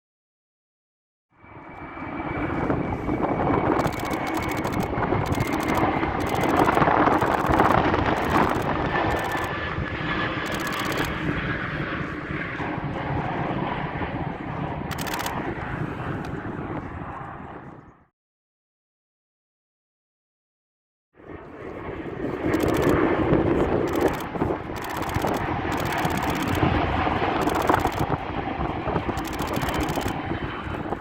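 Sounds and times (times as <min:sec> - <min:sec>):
jet engines roaring and whining: 0:01.4 - 0:18.1, 0:21.2 - 0:31.0
wind rumbling on microphone: 0:01.9 - 0:18.1, 0:21.2 - 0:31.0
camera shutter clicks: 0:03.8 - 0:07.6, 0:10.5 - 0:11.1, 0:14.9 - 0:15.4, 0:23.9 - 0:26.6, 0:29.2 - 0:30.2.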